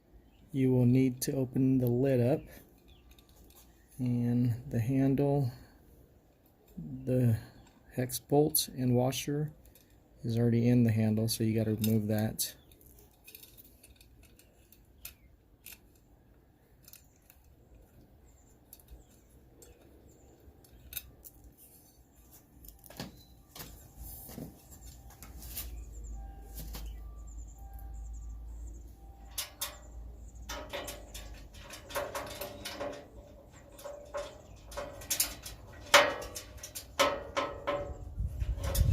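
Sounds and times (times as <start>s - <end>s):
small hardware clicking: 11.8s - 16.1s, 16.8s - 21.5s, 29.0s - 38.0s.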